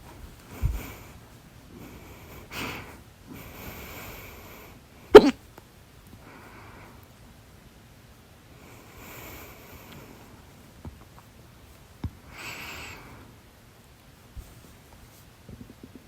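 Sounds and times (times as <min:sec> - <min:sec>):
loud sharp hiccup: 0:05.2 - 0:05.4.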